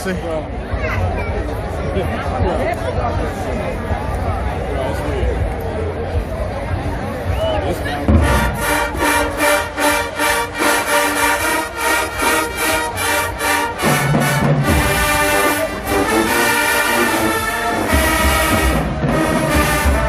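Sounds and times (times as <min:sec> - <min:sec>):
marching band brass: 0:07.8 - 0:20.0
marching band drums: 0:07.9 - 0:20.0.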